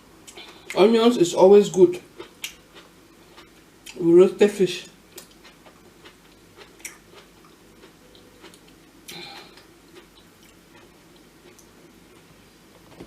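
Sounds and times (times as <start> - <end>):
person chewing food: 0.2 - 0.8, 2.0 - 4.0, 5.1 - 12.3.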